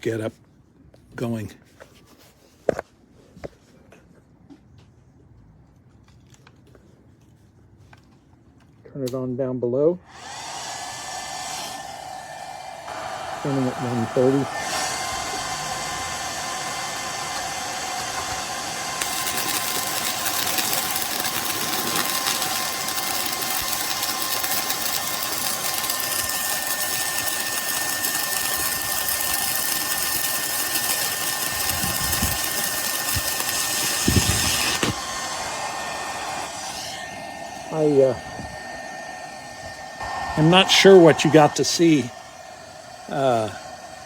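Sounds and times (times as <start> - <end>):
cooling fan whirring: 10.0 - 44.0
welding arc crackling: 19.0 - 35.0.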